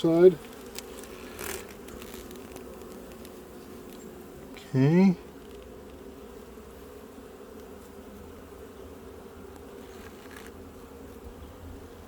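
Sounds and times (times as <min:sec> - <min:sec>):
bees buzzing: 0:00.0 - 0:12.0.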